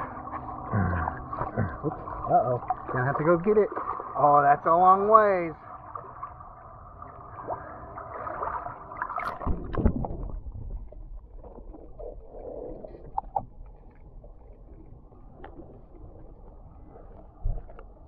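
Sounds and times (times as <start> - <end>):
low rumble: 0.0 - 4.2, 9.3 - 18.0
pool water sloshing: 0.0 - 18.0.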